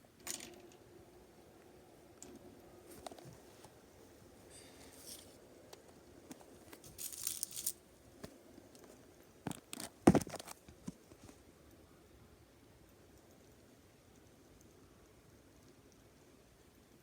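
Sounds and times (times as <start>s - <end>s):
rustling scrape: 4.5s - 5.4s, 6.4s - 7.8s.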